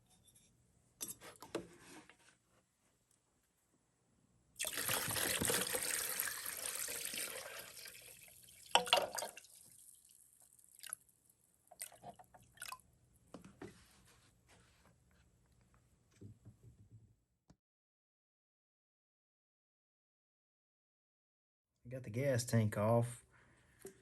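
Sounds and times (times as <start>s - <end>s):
liquid pouring into a container: 4.6s - 11.1s.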